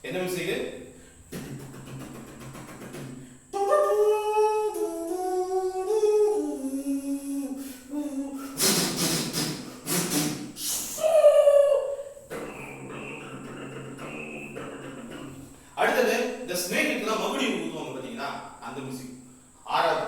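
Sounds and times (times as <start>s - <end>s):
short hissing puffs: 0.9s - 3.6s, 7.5s - 11.1s
man humming a melody: 1.3s - 16.4s.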